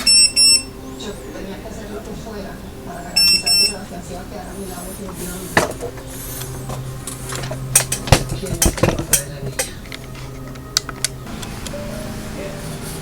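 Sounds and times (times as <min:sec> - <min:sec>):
plastic and metal parts clicking: 0:05.6 - 0:11.2.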